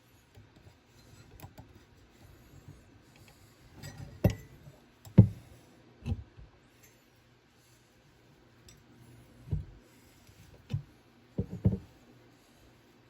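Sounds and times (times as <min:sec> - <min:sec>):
small clicks and handling noises: 0:00.2 - 0:01.9.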